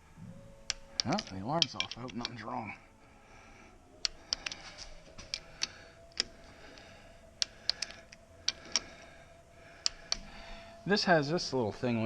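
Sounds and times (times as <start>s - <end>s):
faint steady hum: 0.0s - 12.0s
hand tools clicking on bolts: 0.6s - 2.4s, 7.4s - 9.0s.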